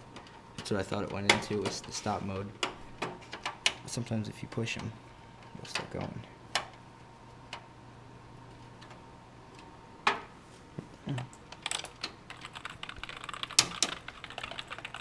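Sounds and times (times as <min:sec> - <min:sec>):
low steady hum: 0:00.0 - 0:15.0
keyboard keystrokes: 0:11.6 - 0:15.0.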